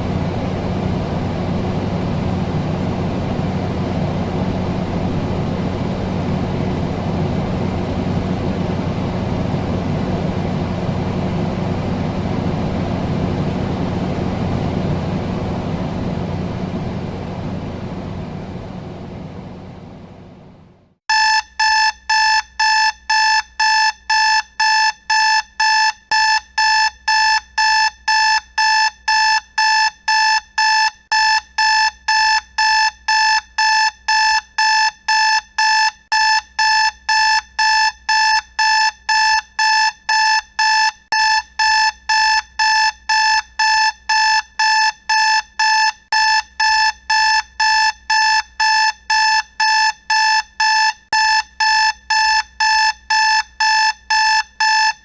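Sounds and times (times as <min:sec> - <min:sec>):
alarm clock beeping: 0:21.1 - 0:55.0.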